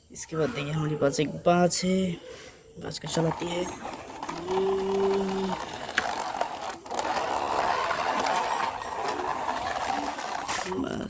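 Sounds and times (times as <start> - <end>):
toy vehicle wheels rattling whirr: 2.9 - 11.0.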